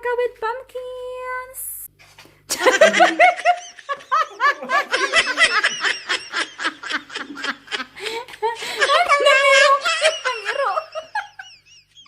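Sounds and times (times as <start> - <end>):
person giggling: 2.5 - 12.0.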